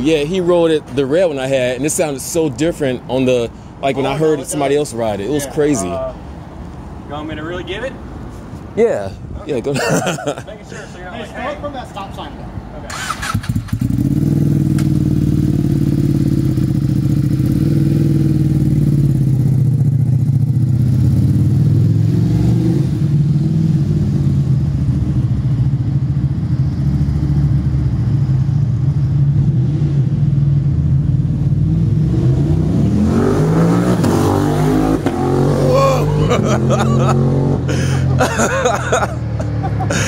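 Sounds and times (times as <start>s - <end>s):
motorcycle engine revving: 12.9s - 28.1s, 29.4s - 38.1s.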